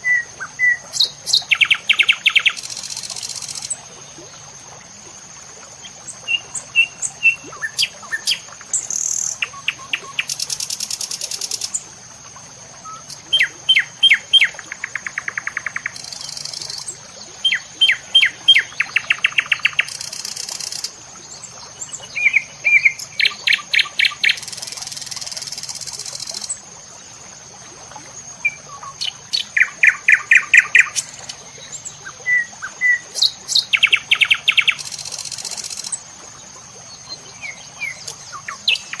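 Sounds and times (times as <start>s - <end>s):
bird singing with trills: 6.8s - 10.6s, 12.9s - 20.9s, 28.5s - 35.9s, 37.2s - 39.0s.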